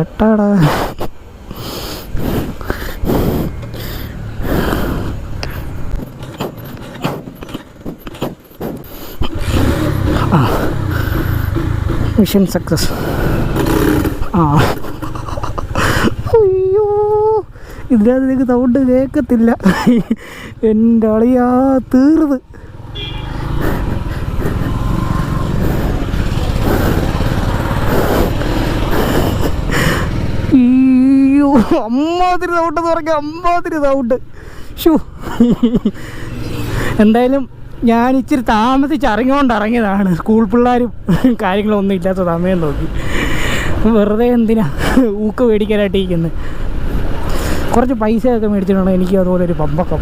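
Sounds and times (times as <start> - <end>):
motorcycle engine sputtering and starting: 5.3 - 17.2, 22.5 - 31.0.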